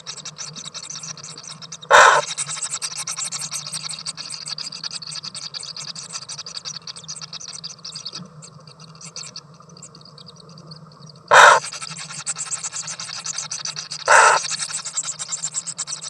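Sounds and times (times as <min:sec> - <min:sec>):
fast high ticking chirr: 0:00.0 - 0:08.1, 0:08.7 - 0:16.0
harsh bird call: 0:01.9 - 0:02.3, 0:11.3 - 0:11.8, 0:14.0 - 0:14.5.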